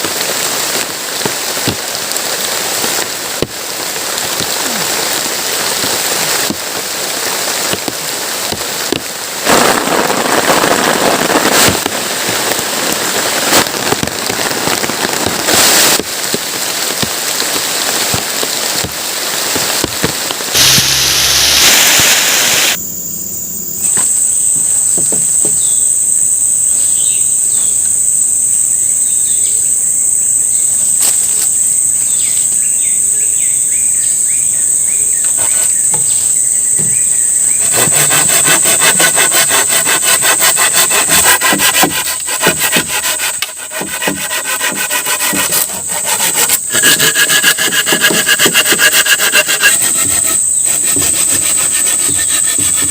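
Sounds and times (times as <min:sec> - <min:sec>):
heavy rain falling: 0:00.0 - 0:22.8, 0:27.9 - 0:52.9
insect drone: 0:00.0 - 0:52.9
faint bird chirps: 0:22.8 - 0:31.0, 0:32.0 - 0:37.8.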